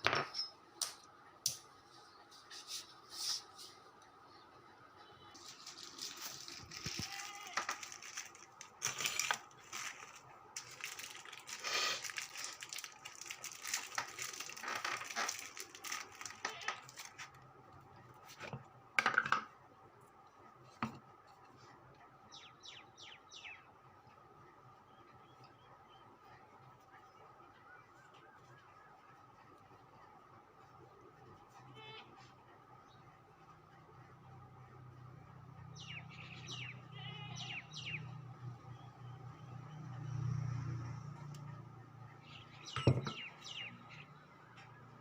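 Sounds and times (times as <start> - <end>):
metal parts clinking: 5.8 - 14.5
tools clattering: 6.9 - 10.2.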